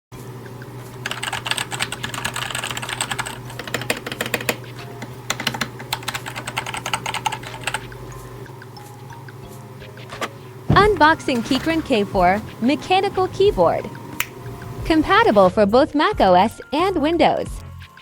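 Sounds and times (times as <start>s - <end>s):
steady low hum: 0.2s - 15.5s
mechanical keyboard typing: 1.0s - 8.0s.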